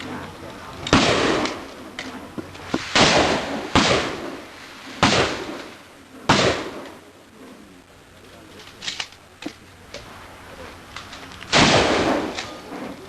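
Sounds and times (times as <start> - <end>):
shotgun blasts with echo: 0.8 - 7.6, 11.5 - 13.0.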